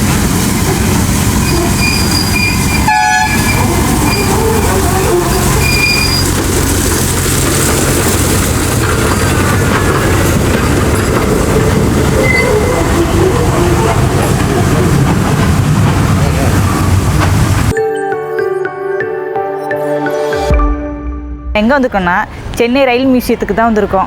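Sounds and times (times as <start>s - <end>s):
train wheels rumbling on track: 0.0s - 17.7s
high-pitched wheel squeals: 1.4s - 6.4s, 12.0s - 15.1s.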